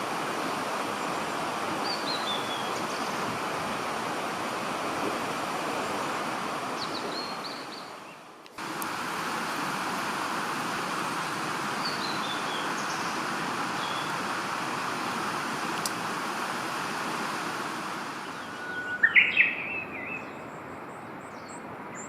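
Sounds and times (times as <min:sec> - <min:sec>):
rushing outdoor noise: 0:00.0 - 0:22.0
small birds calling: 0:01.8 - 0:03.3, 0:11.0 - 0:15.9, 0:18.0 - 0:22.0.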